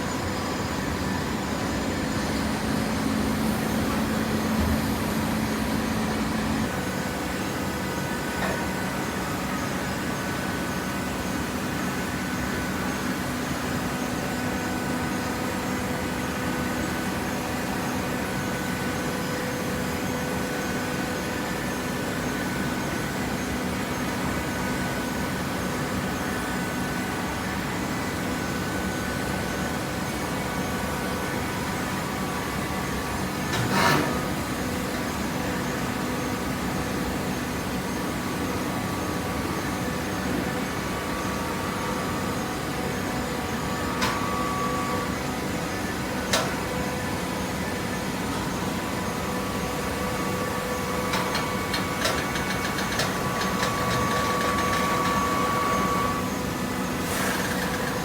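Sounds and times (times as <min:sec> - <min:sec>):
baler machine hum: 0:00.0 - 0:12.4.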